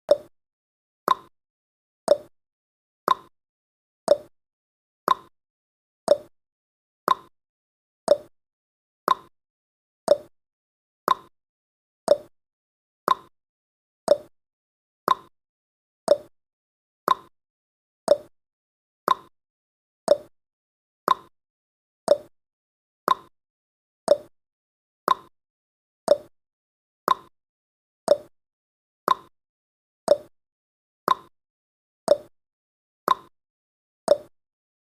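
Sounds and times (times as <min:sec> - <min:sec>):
timer ticking: 0:00.1 - 0:00.3, 0:01.1 - 0:01.3, 0:02.1 - 0:02.3, 0:03.1 - 0:03.3, 0:04.1 - 0:04.3, 0:05.1 - 0:05.3, 0:06.1 - 0:06.3, 0:07.1 - 0:07.3, 0:08.1 - 0:08.3, 0:09.1 - 0:09.3, 0:10.1 - 0:10.3, 0:11.1 - 0:11.3, 0:12.1 - 0:12.3, 0:13.1 - 0:13.3, 0:14.1 - 0:14.3, 0:15.1 - 0:15.3, 0:16.1 - 0:16.3, 0:17.1 - 0:17.3, 0:18.1 - 0:18.3, 0:19.1 - 0:19.3, 0:20.1 - 0:20.3, 0:21.1 - 0:21.3, 0:22.1 - 0:22.3, 0:23.1 - 0:23.3, 0:24.1 - 0:24.3, 0:25.1 - 0:25.3, 0:26.1 - 0:26.3, 0:27.1 - 0:27.3, 0:28.1 - 0:28.3, 0:29.1 - 0:29.3, 0:30.1 - 0:30.3, 0:31.1 - 0:31.3, 0:32.1 - 0:32.3, 0:33.1 - 0:33.3, 0:34.1 - 0:34.3.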